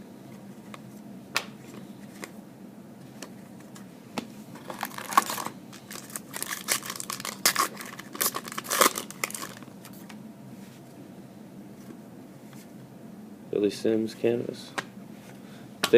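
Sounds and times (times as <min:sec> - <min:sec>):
wrapper tearing and crinkling: 0:04.6 - 0:09.7.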